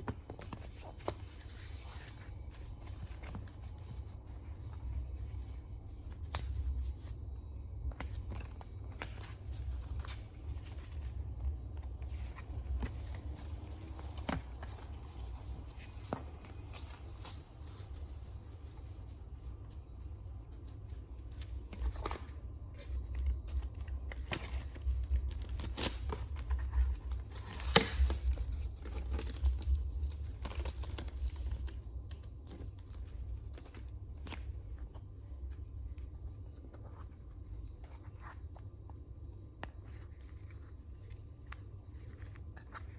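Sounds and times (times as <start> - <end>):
packaging tearing and crinkling: 24.2 - 26.5.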